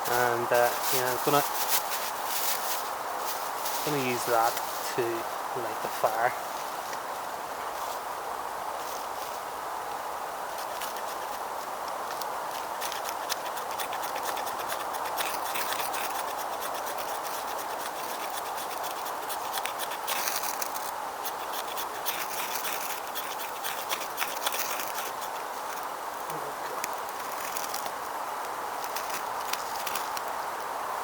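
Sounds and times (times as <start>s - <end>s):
birch bark crackling: 0.0s - 30.7s.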